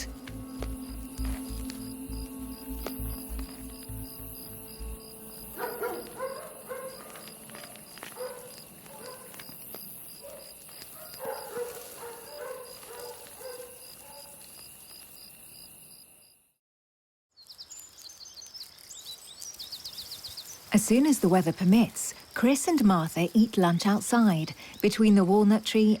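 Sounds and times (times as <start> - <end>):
animal calls: 5.4 - 9.5.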